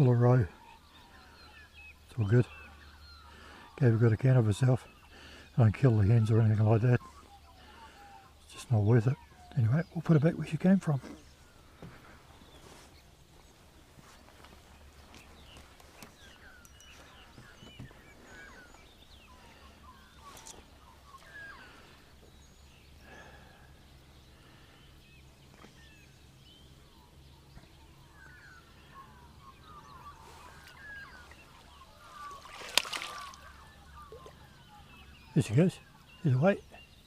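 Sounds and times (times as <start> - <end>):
magpies warbling: 15.6 - 23.6, 27.8 - 37.0.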